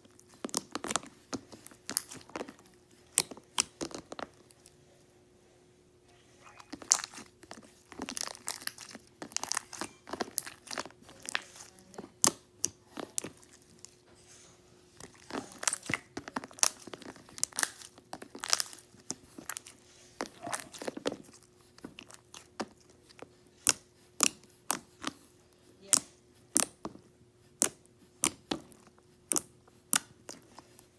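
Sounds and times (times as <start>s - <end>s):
slime crackling and popping: 6.6s - 14.0s, 15.0s - 25.2s, 27.5s - 30.8s.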